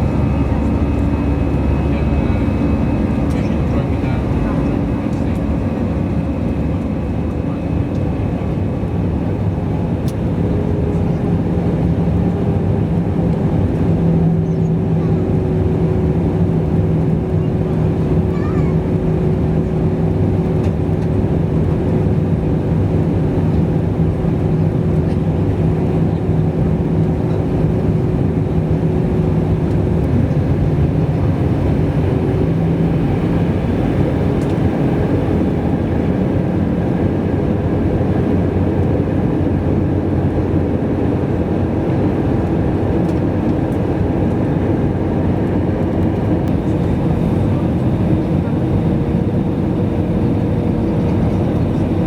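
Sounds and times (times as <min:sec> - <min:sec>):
engine humming tones: 0:00.0 - 0:09.1
airplane cabin engine rumble: 0:00.0 - 0:52.0.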